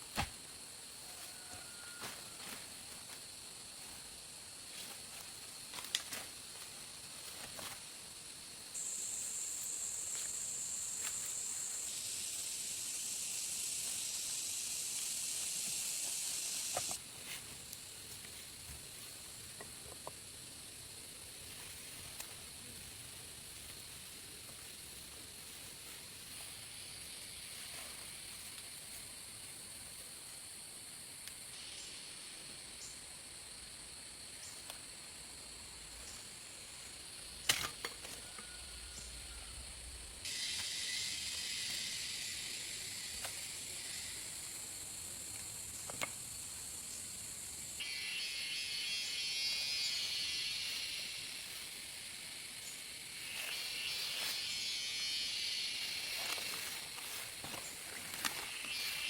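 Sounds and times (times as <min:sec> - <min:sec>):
faint insect drone: 0:00.0 - 0:59.0
high-pitched insect buzzing: 0:08.8 - 0:17.0, 0:40.2 - 0:44.8, 0:47.6 - 0:59.0.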